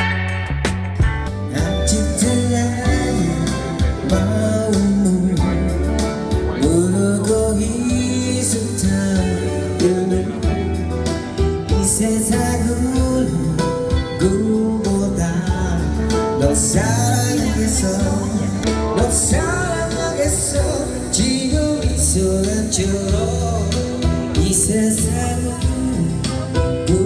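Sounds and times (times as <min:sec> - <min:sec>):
song with guitar and vocals: 0:00.0 - 0:27.0.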